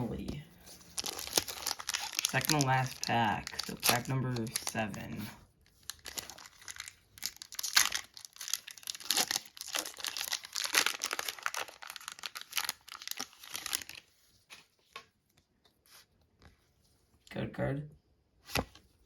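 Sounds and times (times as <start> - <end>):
foil wrapper tearing and crinkling: 0.9 - 14.1.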